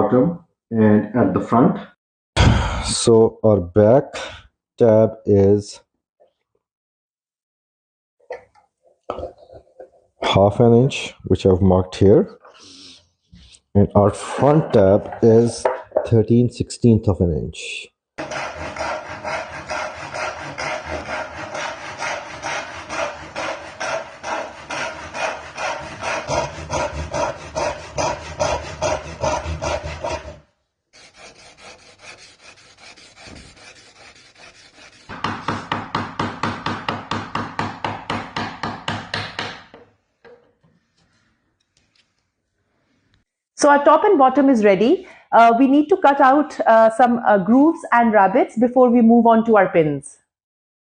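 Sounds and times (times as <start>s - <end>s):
hand saw cutting wood: 18.2s - 30.4s, 31.0s - 35.8s.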